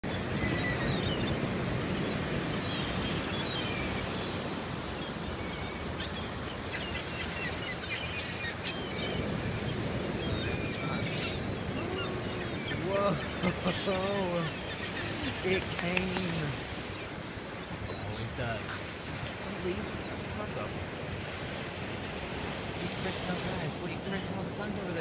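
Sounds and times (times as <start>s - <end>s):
birds chirping: 0.0s - 25.0s
surf on a beach: 0.0s - 25.0s.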